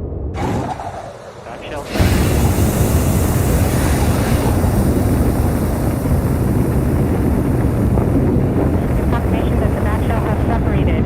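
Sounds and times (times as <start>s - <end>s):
steady rumbling roar: 0.0s - 11.0s
rushing hiss: 1.6s - 8.1s.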